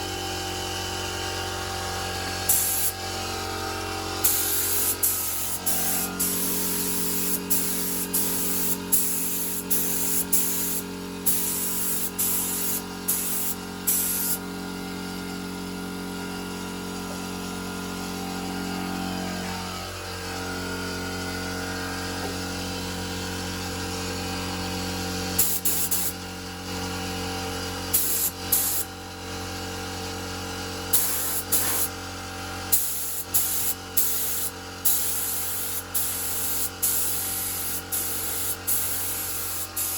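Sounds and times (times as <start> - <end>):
steady motor hum: 0.0 - 39.9
paint spray gun hissing: 2.5 - 3.5, 4.2 - 14.4, 25.4 - 26.2, 27.9 - 28.9, 30.9 - 32.0, 32.7 - 39.9.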